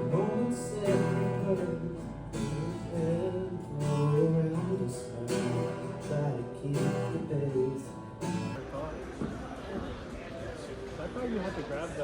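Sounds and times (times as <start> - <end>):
strummed acoustic guitar music: 0.0 - 8.8.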